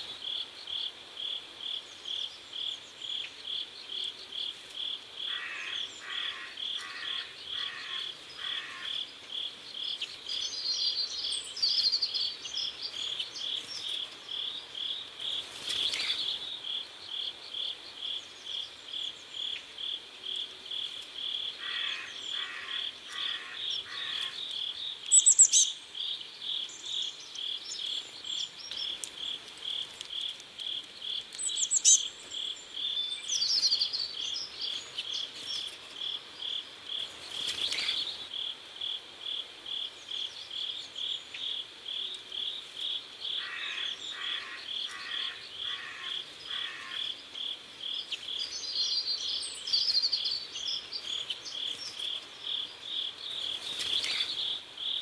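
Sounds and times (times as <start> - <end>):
crickets chirping: 0.0 - 55.0
bird chirps: 21.6 - 29.4, 31.1 - 35.7.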